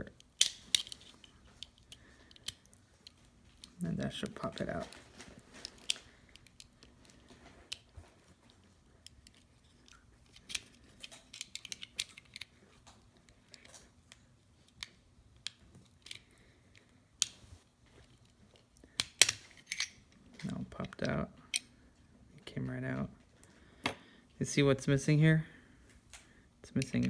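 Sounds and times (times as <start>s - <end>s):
screwdriver clicks and scrapes: 19.0s - 20.0s.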